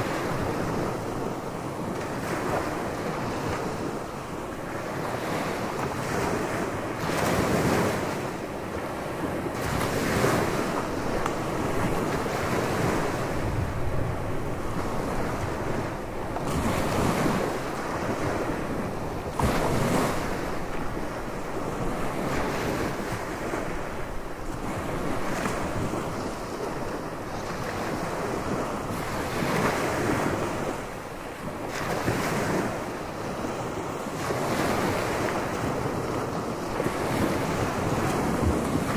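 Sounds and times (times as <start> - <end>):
surf breaking on a beach: 0.0 - 38.9
wind buffeting microphone: 0.0 - 38.9.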